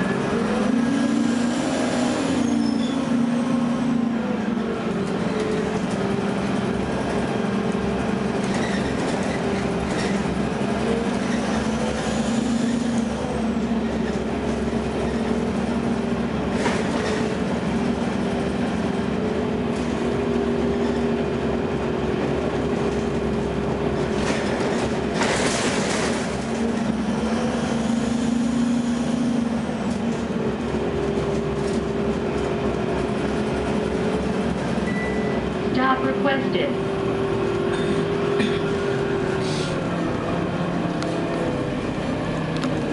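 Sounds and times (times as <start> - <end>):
bus engine drone and whine: 0.0 - 42.9.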